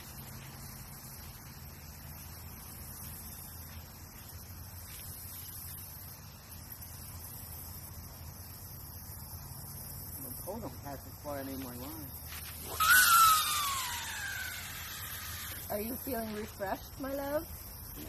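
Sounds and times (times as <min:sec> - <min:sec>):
high hiss: 0:10.2 - 0:18.0.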